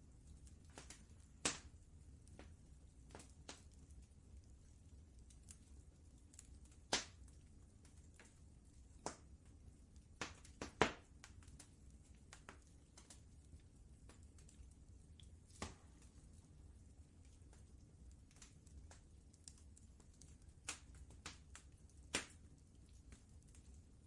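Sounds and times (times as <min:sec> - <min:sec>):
faint low rumble: 0:00.0 - 0:24.0
wood fire crackling: 0:00.0 - 0:24.0.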